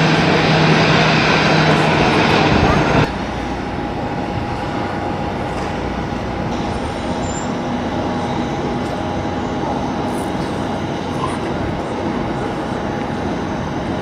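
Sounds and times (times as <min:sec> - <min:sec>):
jet engines rumbling and whining: 0:00.0 - 0:14.0.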